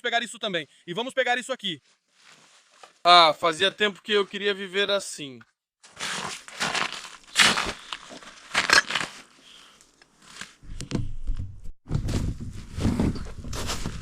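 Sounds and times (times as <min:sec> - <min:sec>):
rustling and crunching gear: 0:05.8 - 0:10.7
microphone handling rumble: 0:10.7 - 0:14.0.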